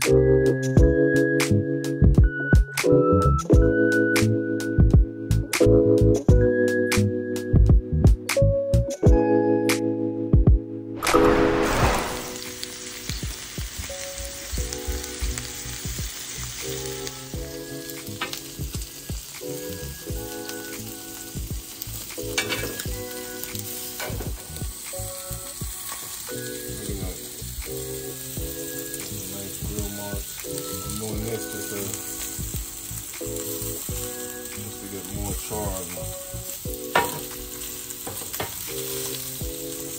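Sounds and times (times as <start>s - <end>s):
oil pops and crackles: 11.0s - 25.1s, 36.7s - 39.6s
octopus sizzling on a grill: 11.1s - 39.9s.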